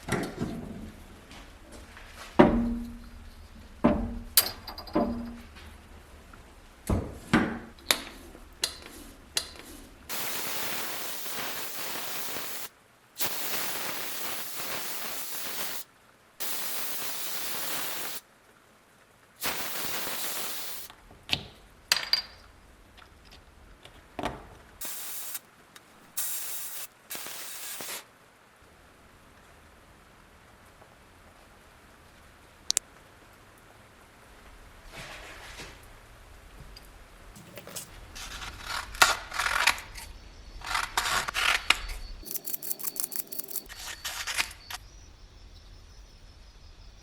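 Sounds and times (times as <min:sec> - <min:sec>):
sandblaster hissing: 0:10.1 - 0:18.2, 0:19.4 - 0:20.9, 0:24.8 - 0:25.4, 0:26.1 - 0:28.0.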